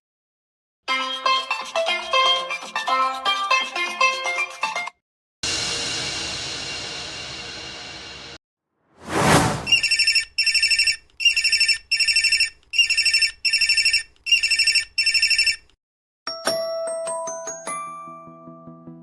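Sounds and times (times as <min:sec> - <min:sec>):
ringtone whoosh: 0:09.0 - 0:09.9.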